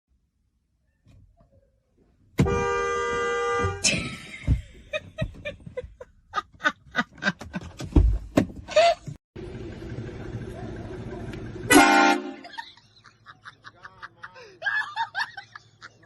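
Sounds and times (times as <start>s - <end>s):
air horn blast: 2.4s - 3.9s, 11.7s - 12.4s
knocks and thumps: 2.4s - 6.0s, 7.2s - 8.8s.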